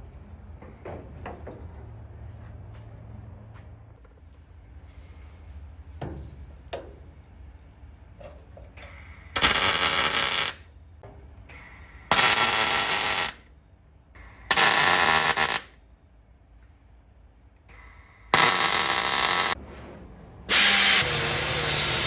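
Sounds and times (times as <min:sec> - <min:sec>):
welder bursts on sheet steel: 0:08.8 - 0:10.7, 0:11.5 - 0:13.4, 0:14.2 - 0:15.8, 0:17.8 - 0:19.6, 0:20.5 - 0:22.0.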